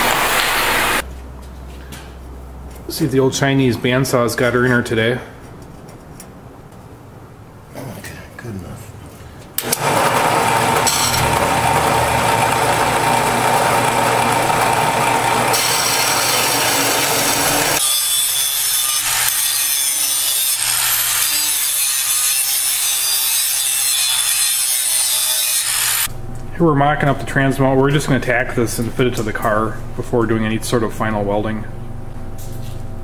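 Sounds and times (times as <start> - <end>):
bandsaw cutting metal: 9.6 - 26.1.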